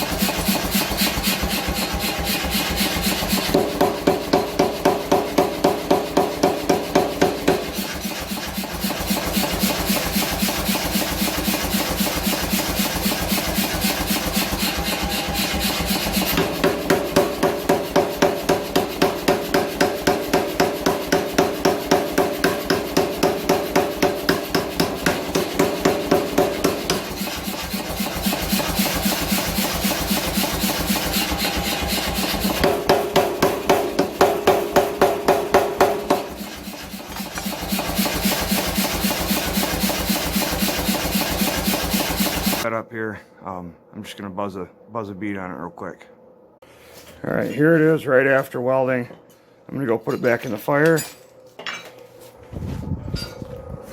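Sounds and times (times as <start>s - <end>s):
power hammer striking hot steel: 0.0s - 42.6s.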